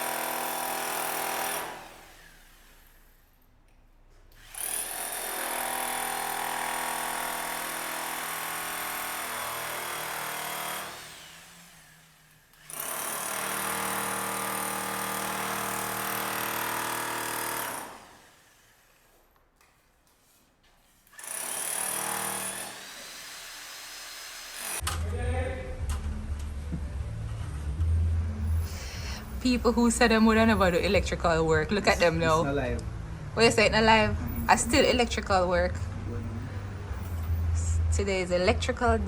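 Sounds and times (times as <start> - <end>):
power tool motor running: 4.4 - 18.9, 21.1 - 24.8.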